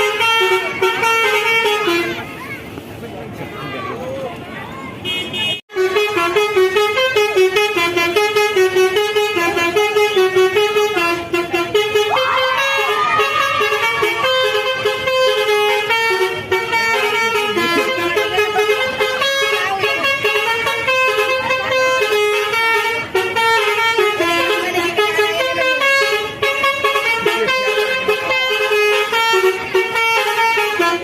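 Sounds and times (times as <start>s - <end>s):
musical bus horns playing tunes: 0.0s - 2.7s, 5.0s - 31.0s.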